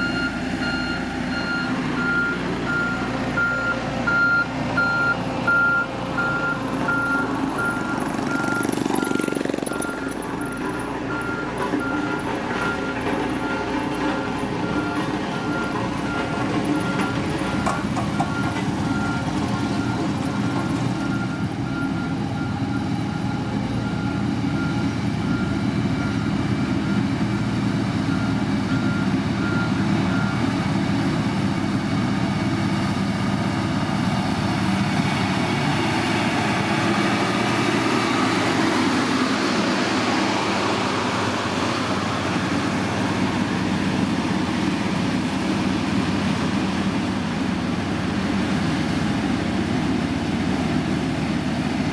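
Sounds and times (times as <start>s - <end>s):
reversing alarm beeping: 0.0s - 27.1s
heavy machinery diesel engine: 0.0s - 51.9s.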